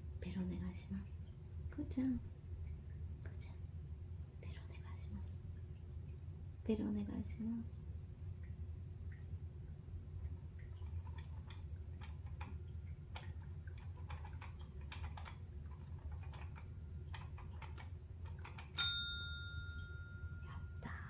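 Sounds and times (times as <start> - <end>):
light clicks and taps: 10.2 - 18.8
service bell ding: 18.8 - 20.8.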